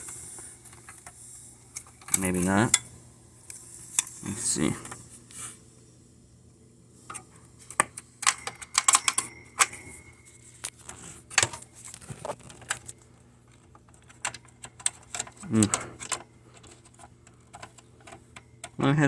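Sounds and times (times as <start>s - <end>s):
faint ringing tone: 8.0s - 11.9s.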